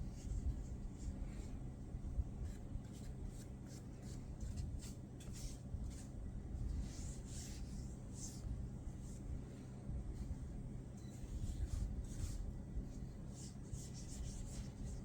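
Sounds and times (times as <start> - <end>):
cloth wiping a screen: 2.4 - 9.3, 11.1 - 15.0.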